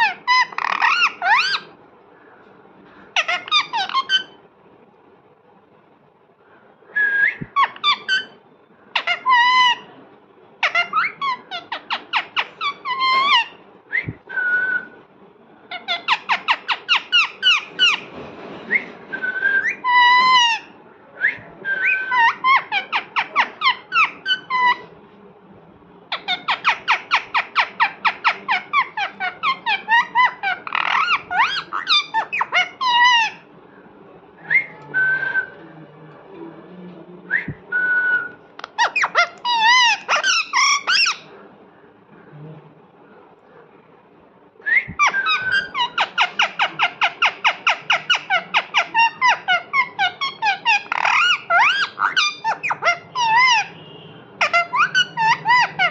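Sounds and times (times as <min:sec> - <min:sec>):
parrot chirping and squawking: 0:00.0 - 0:01.8, 0:03.1 - 0:04.4, 0:07.5 - 0:09.9, 0:10.6 - 0:13.6, 0:15.7 - 0:18.1, 0:19.6 - 0:20.8, 0:21.8 - 0:24.9, 0:26.1 - 0:33.5, 0:38.6 - 0:41.3, 0:45.0 - 0:53.8, 0:54.4 - 0:55.9.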